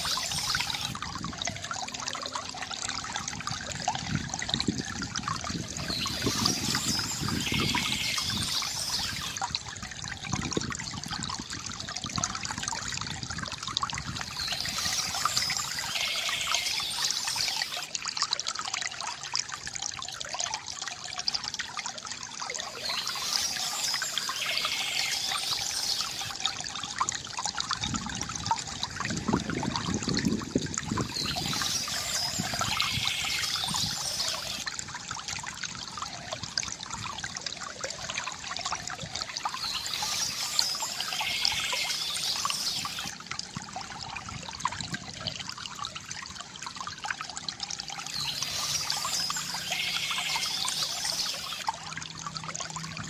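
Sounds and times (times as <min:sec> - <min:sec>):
birds chirping: 0:00.0 - 0:00.9, 0:05.8 - 0:09.4, 0:14.2 - 0:17.9, 0:22.6 - 0:26.3, 0:31.0 - 0:34.6, 0:39.4 - 0:43.1, 0:48.1 - 0:51.6
water trickling from bamboo fountain: 0:00.0 - 0:53.0.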